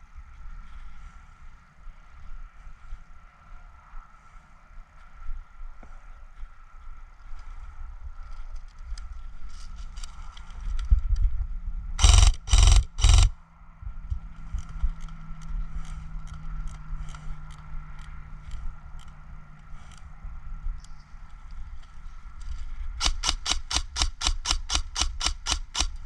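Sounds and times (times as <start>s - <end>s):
gear scraping and rustling: 7.3s - 11.0s, 12.0s - 13.3s, 20.8s - 26.0s
short loud bursts: 12.0s - 13.3s, 23.0s - 26.0s.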